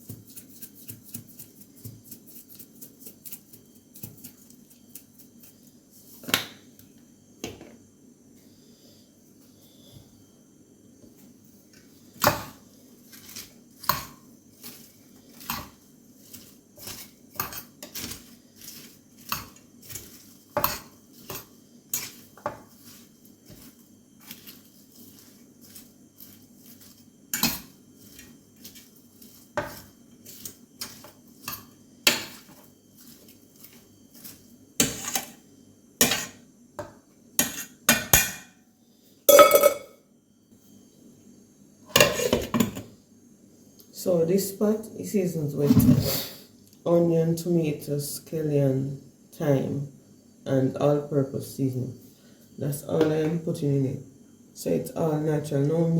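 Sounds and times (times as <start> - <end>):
utensil clinking against cooking pot: 39.3 - 39.9.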